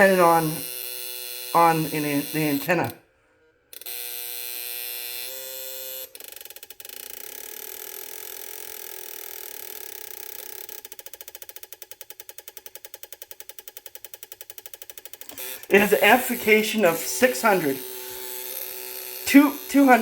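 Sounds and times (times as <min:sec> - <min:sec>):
electronic buzz: 0:15.3 - 0:20.0.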